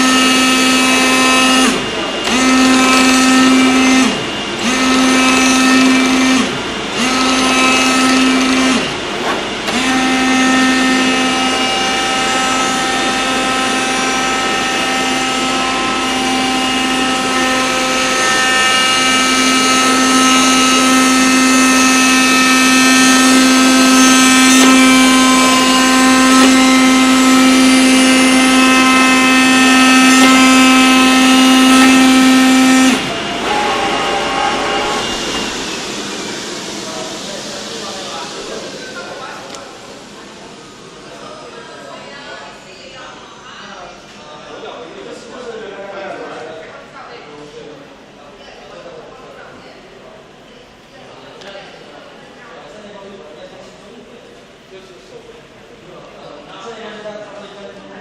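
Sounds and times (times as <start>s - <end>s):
cutter knife buzzing: 0.0s - 8.9s, 9.6s - 37.1s.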